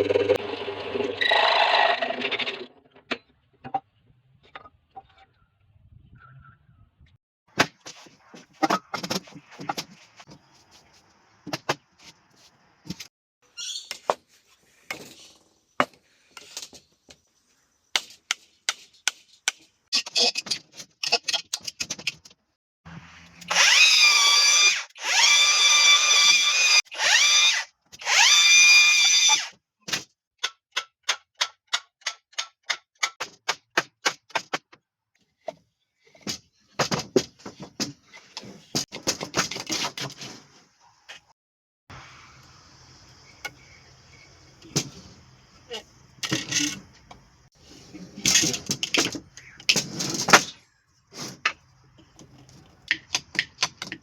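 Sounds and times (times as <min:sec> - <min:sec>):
power drill driving into wood: 0:23.4 - 0:29.5.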